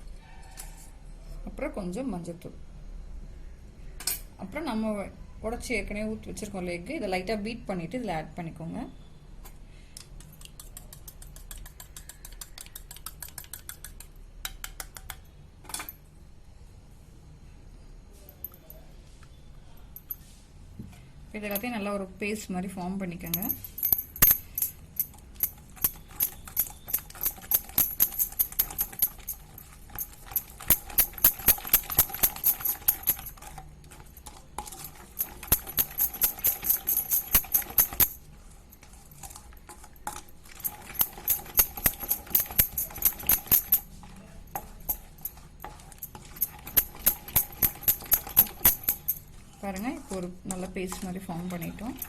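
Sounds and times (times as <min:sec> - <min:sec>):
spoon stirring paste in bowl: 0:10.0 - 0:15.3, 0:37.2 - 0:43.2, 0:43.8 - 0:52.0.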